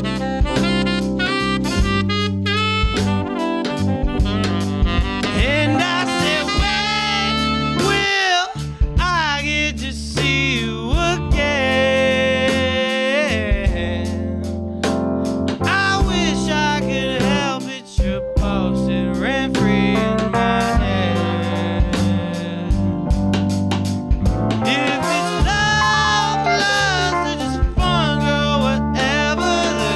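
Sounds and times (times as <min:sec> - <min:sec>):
tenor saxophone solo: 0:00.0 - 0:09.2, 0:15.2 - 0:23.5, 0:24.2 - 0:29.9
drum kit with cymbal hits: 0:00.0 - 0:09.5, 0:10.2 - 0:14.2, 0:14.8 - 0:18.8, 0:19.5 - 0:29.9
electric bass: 0:00.0 - 0:29.9.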